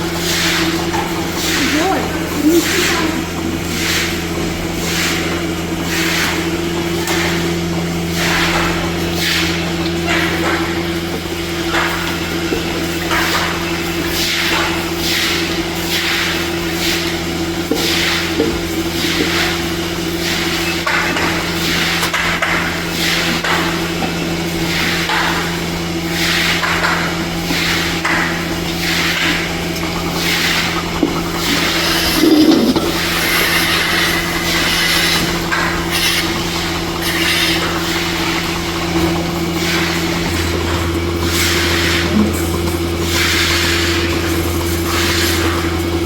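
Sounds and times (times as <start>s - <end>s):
milking machinery humming: 0.0s - 46.0s
machinery hiss: 30.2s - 43.8s.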